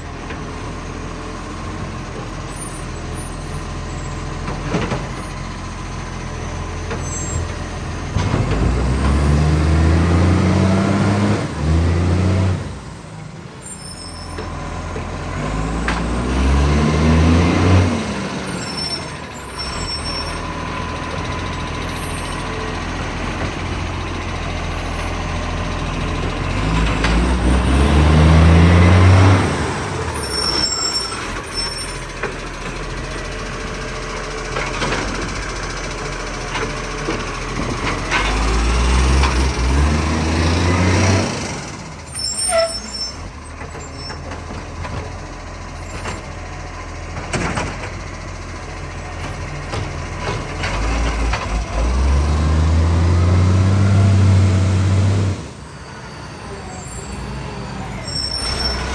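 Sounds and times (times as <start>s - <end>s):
diesel engine revving: 0.0s - 58.9s.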